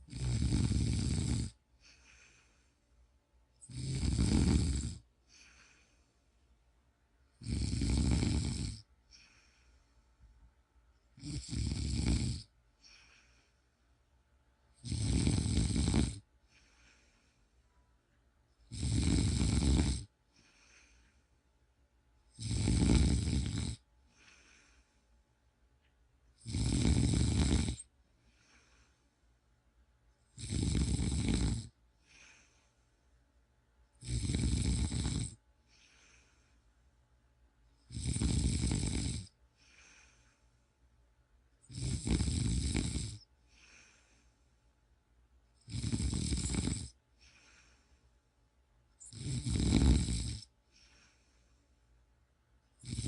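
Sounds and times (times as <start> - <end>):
person snoring: 0.0 - 2.7, 3.6 - 6.0, 7.4 - 9.7, 11.2 - 13.5, 14.8 - 17.4, 18.6 - 21.2, 22.3 - 24.9, 26.4 - 29.0, 30.3 - 32.7, 34.0 - 36.4, 37.8 - 40.4, 41.6 - 44.3, 45.6 - 47.9, 49.0 - 51.3, 52.8 - 53.0
faint breath: 1.7 - 3.2, 5.2 - 6.7, 8.9 - 10.5, 12.7 - 14.1, 16.3 - 18.0, 20.2 - 21.6, 24.0 - 25.4, 27.8 - 29.4, 31.9 - 33.3, 35.6 - 36.9, 39.5 - 41.0, 43.2 - 44.9, 47.0 - 48.4, 50.4 - 52.1.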